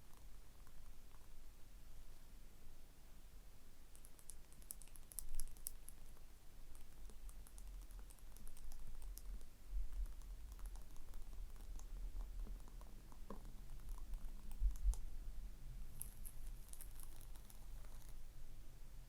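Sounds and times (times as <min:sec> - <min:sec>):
tapping and scratching on hard object: 0:06.8 - 0:15.0.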